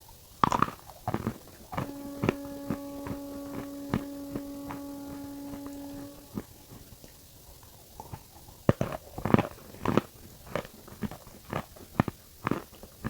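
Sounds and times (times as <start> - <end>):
steady electrical hum: 1.7 - 6.8.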